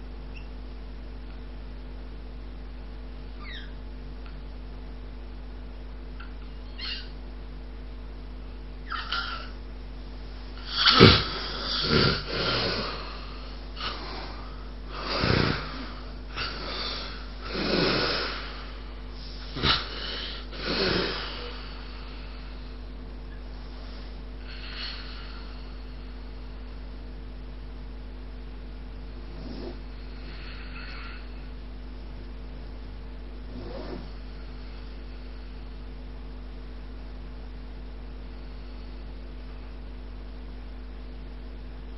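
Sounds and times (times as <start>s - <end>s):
person snoring: 10.6s - 22.7s.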